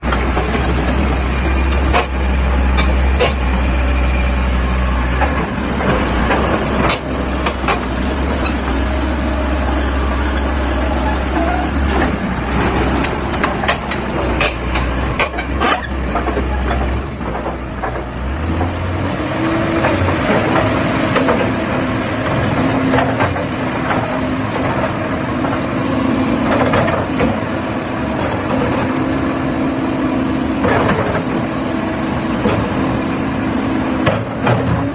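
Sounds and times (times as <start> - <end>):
excavator diesel engine running: 0.0 - 34.9
metallic clanks and knocks: 11.4 - 18.8.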